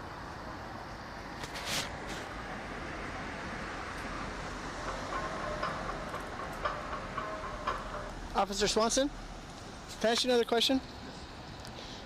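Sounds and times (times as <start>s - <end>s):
steady traffic hum: 0.0s - 12.0s
short hiss: 1.4s - 2.3s.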